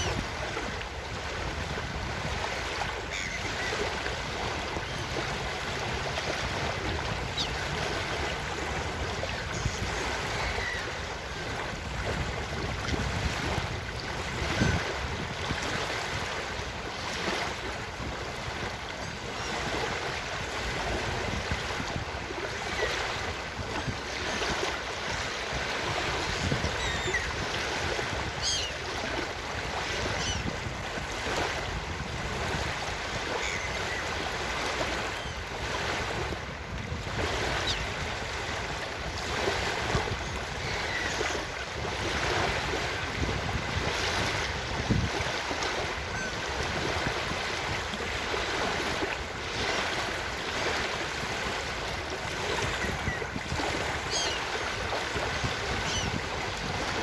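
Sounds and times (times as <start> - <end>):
ocean surf on a beach: 0.0 - 57.0
seagull calls: 3.0 - 3.8, 7.3 - 7.7, 9.3 - 11.0, 26.7 - 27.4, 28.4 - 28.8, 30.0 - 30.5, 33.3 - 34.1, 40.2 - 41.5, 54.0 - 54.6, 55.8 - 56.2.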